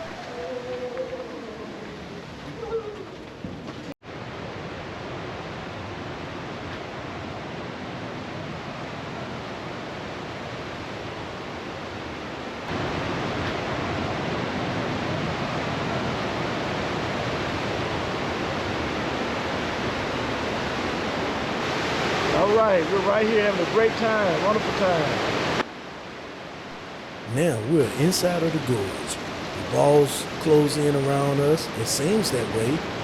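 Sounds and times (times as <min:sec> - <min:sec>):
river torrent roaring: 0:27.3 - 0:33.0.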